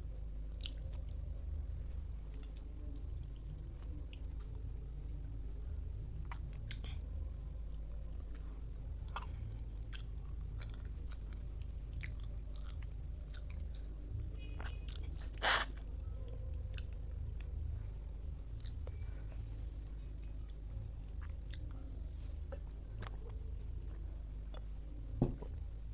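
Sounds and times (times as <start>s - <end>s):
steady low hum: 0.0s - 25.9s
person chewing food: 0.5s - 1.2s, 7.7s - 16.0s, 18.5s - 19.4s, 20.2s - 24.7s
wet mouth clicks: 14.6s - 15.8s
loud sharp noise: 15.2s - 15.7s.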